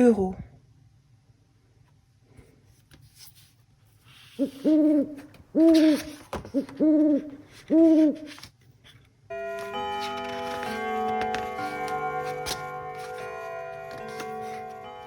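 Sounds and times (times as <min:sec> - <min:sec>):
owl hooting: 0:04.2 - 0:08.4
music: 0:09.3 - 0:15.0.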